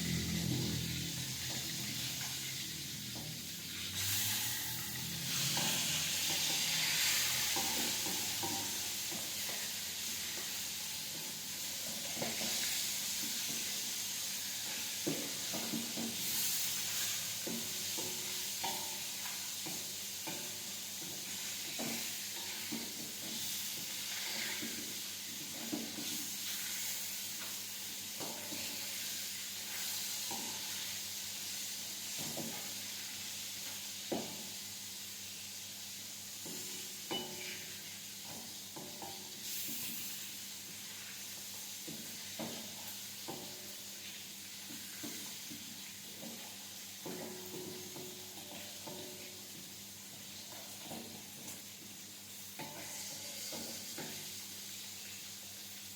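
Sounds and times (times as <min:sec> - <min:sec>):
food sizzling in hot oil: 0:00.0 - 0:55.9
utensil scraping a pan: 0:03.7 - 0:08.8, 0:52.6 - 0:54.2.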